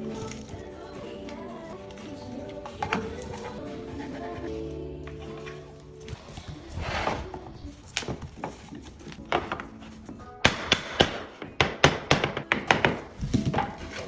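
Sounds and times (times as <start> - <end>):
faint music: 0.0 - 14.0.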